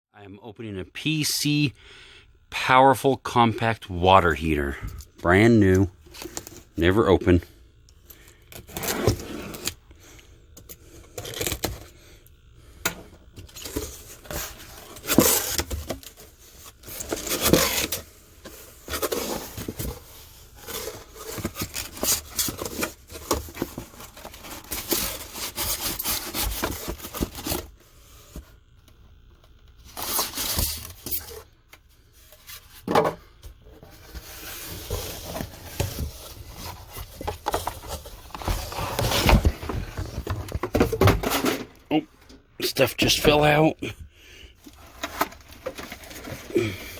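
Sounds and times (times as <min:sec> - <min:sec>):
cardboard rubbing and tearing: 0:13.6 - 0:18.1, 0:18.7 - 0:27.7.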